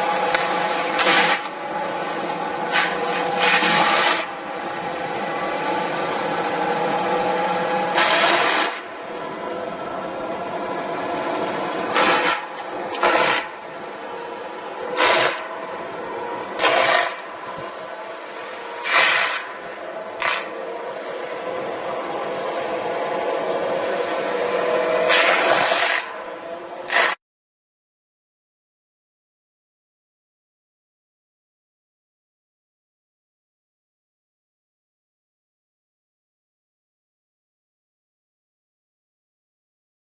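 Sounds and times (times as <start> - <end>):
machine engine running: 0.0 - 27.2
rasping scraping bursts: 0.2 - 4.3, 7.9 - 8.9, 11.9 - 13.6, 14.9 - 15.5, 16.6 - 17.6, 18.8 - 19.6, 20.2 - 20.6, 24.9 - 26.2, 26.9 - 27.2.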